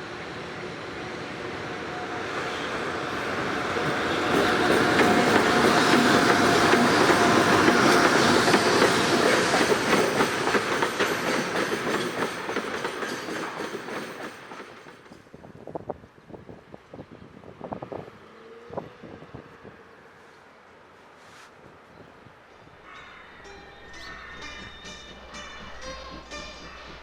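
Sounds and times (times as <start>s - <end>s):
freight train passing: 0.0s - 21.0s, 22.4s - 27.0s
train wheels clacking: 2.3s - 15.4s, 22.8s - 27.0s.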